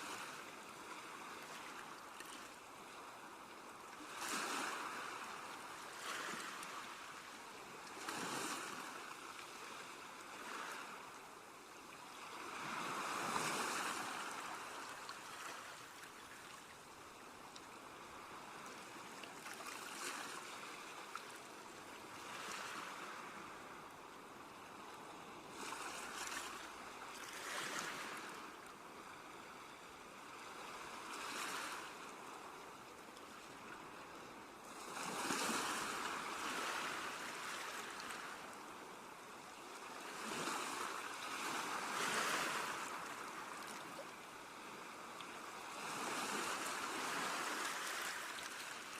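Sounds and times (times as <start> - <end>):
surf hiss: 0.0 - 48.9
sea waves washing onto shore: 12.1 - 15.8, 34.7 - 48.9.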